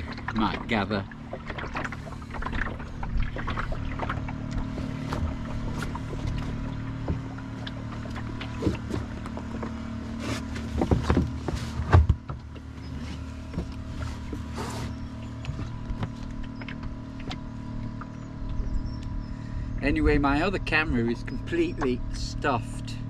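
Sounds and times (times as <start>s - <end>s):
gear knocking and creaking: 0.0s - 14.6s
steady low hum: 0.0s - 23.0s.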